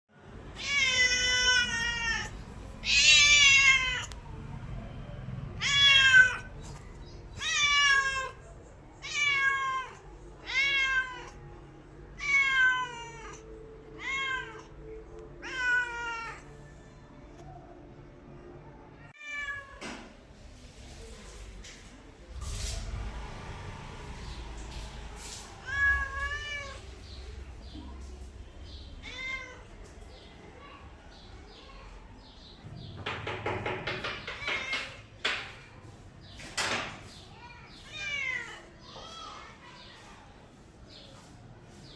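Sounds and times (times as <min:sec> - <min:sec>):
cat meowing: 0:00.6 - 0:04.1, 0:05.6 - 0:06.5, 0:07.4 - 0:08.4, 0:09.0 - 0:11.4, 0:12.2 - 0:14.7, 0:15.4 - 0:16.4, 0:19.2 - 0:19.8, 0:25.6 - 0:26.8, 0:28.9 - 0:29.7.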